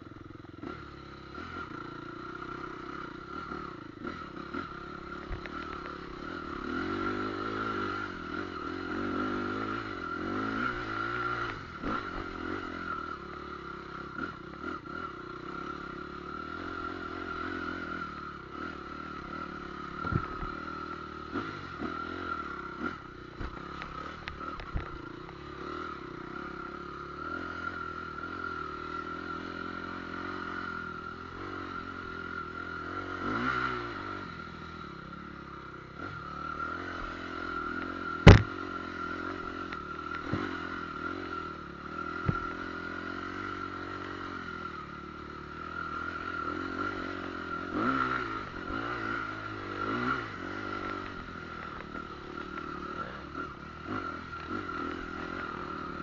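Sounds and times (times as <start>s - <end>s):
engine running: 0.0s - 56.0s
sharp loud bang: 38.2s - 38.5s.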